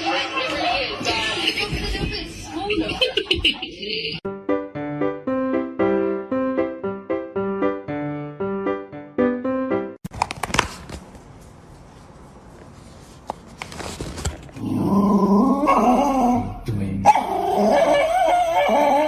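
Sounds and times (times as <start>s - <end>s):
piano music: 4.3s - 10.0s
dog howling with wavering pitch: 17.1s - 19.0s.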